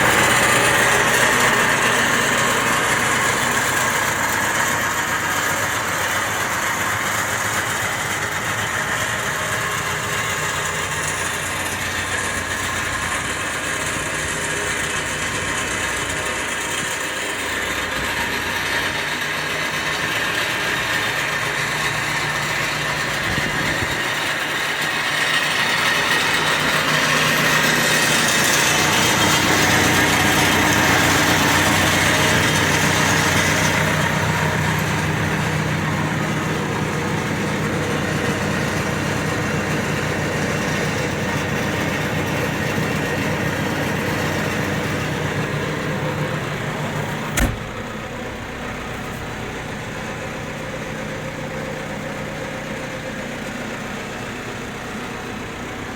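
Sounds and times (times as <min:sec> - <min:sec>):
diesel engine idling: 0:00.0 - 0:55.9
sharp click: 0:47.3 - 0:47.8.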